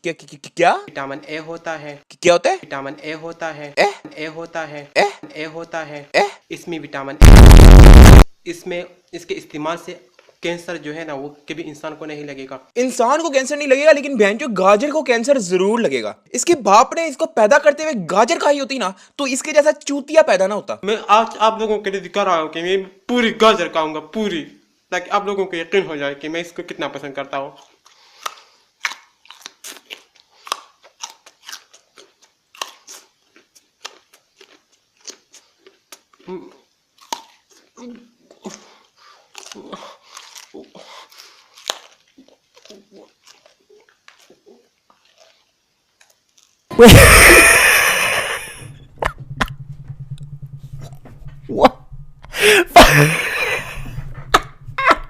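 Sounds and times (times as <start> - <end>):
carrot crunching: 27.6 - 47.8
man making vocal noises: 46.7 - 48.6, 52.4 - 53.9
low steady hum: 46.7 - 55.0.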